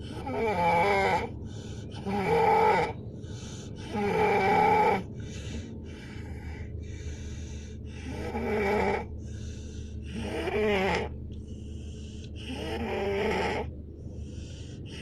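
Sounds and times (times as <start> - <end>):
person snoring heavily: 0.0 - 1.3, 1.9 - 5.1, 7.9 - 9.1, 10.0 - 11.1, 12.4 - 13.7
soft breathing: 0.9 - 15.0.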